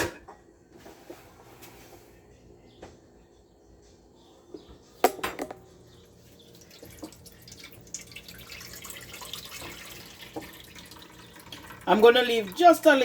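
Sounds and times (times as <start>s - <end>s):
liquid pouring and splashing: 6.3s - 13.0s.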